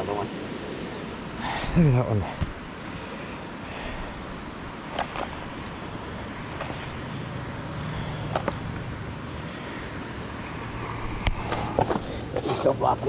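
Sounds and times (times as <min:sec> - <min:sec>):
creek water rushing: 0:00.0 - 0:13.0.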